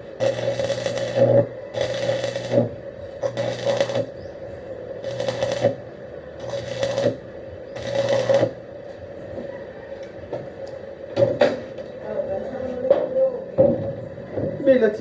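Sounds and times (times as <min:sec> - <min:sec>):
arc welding crackling: 0:00.0 - 0:09.1
low electrical buzz: 0:00.0 - 0:09.4.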